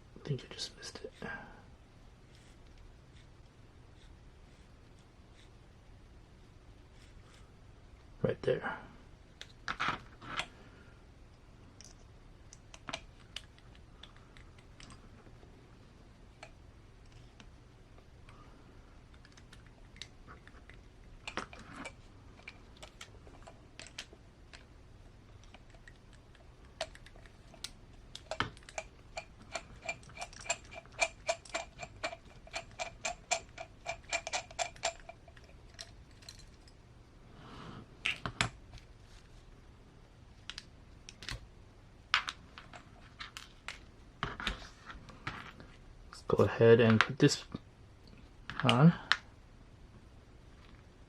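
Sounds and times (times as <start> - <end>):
metal parts clicking and tapping: 26.8 - 36.8.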